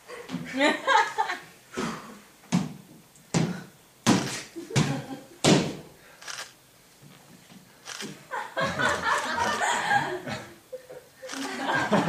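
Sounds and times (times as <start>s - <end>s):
thumps: 2.5s - 5.9s.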